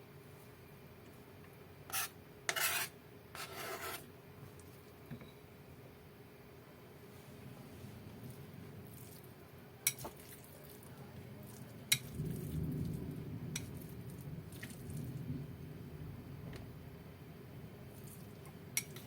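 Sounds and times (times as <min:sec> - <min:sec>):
filling squelching in a bowl: 0:08.3 - 0:12.6, 0:13.6 - 0:15.1.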